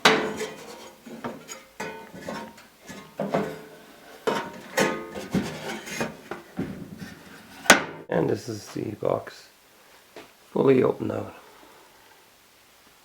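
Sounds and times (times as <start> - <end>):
sheet metal clanks ringing: 1.4 - 3.6, 4.3 - 5.8.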